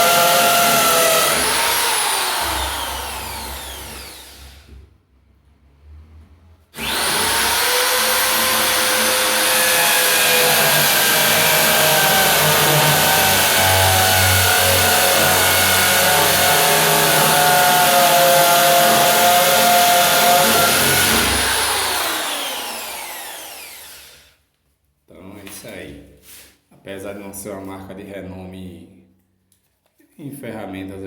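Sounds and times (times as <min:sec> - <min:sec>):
electric drill running: 0:00.0 - 0:04.7, 0:06.8 - 0:24.3.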